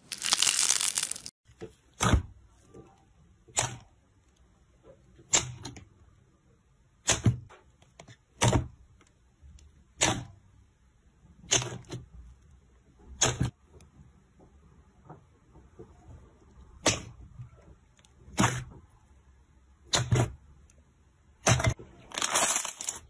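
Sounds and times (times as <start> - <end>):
slime squishing: 0.0 - 1.3.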